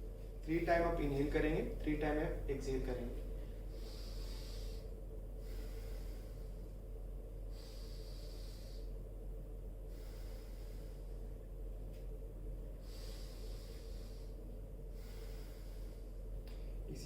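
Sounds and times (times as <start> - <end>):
steady low hum: 0.0 - 17.0
man breathing deeply: 3.3 - 16.9.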